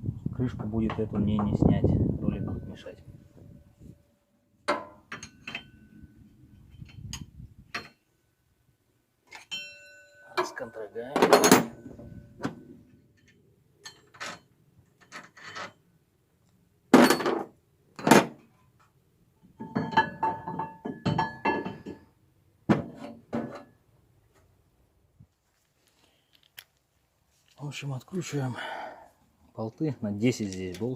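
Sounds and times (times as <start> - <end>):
metal tools knocking on engine parts: 4.7 - 5.9, 9.3 - 12.6, 19.6 - 22.1
ringing metallic clink: 9.4 - 12.2.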